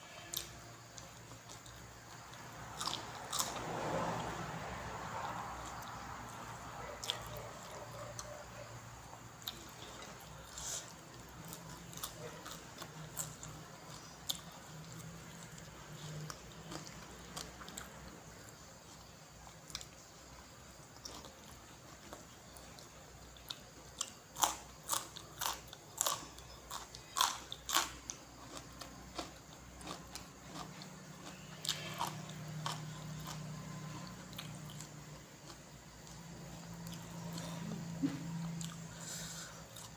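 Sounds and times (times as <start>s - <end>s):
person chewing food: 0.3s - 3.8s, 7.0s - 39.9s
crunchy bites: 0.3s - 4.2s, 23.4s - 39.9s.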